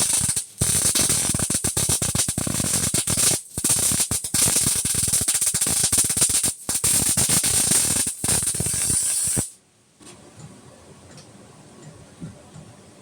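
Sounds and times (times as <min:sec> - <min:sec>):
electric arc welding crackle: 0:00.0 - 0:09.6.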